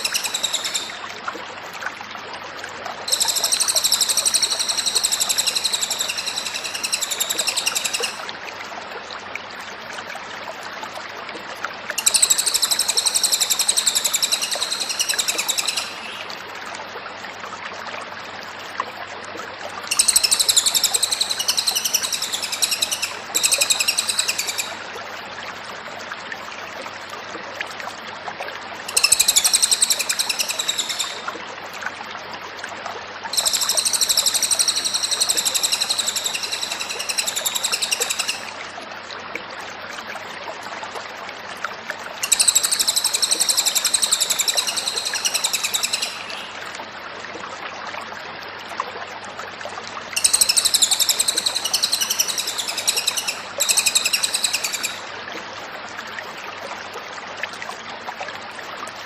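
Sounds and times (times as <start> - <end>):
songbird trilling: 0.0 - 1.0, 3.1 - 8.2, 12.0 - 16.2, 19.9 - 24.8, 28.9 - 31.2, 33.4 - 38.5, 42.2 - 46.6, 50.2 - 55.0.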